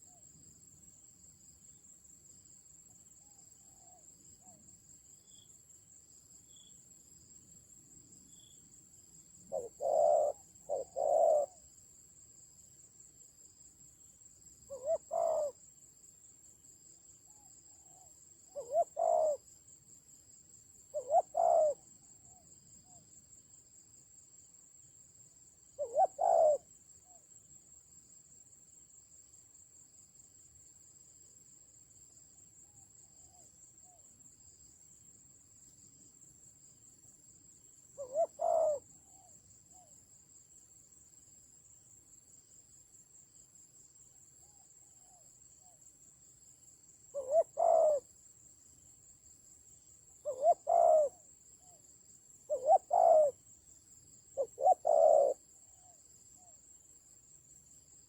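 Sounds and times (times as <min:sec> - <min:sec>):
dove cooing: 0:09.5 - 0:11.6, 0:14.7 - 0:15.6, 0:17.8 - 0:19.4, 0:20.9 - 0:22.4, 0:25.8 - 0:27.2, 0:38.0 - 0:39.9, 0:47.1 - 0:48.0, 0:50.2 - 0:51.2, 0:52.5 - 0:53.4, 0:54.4 - 0:55.4.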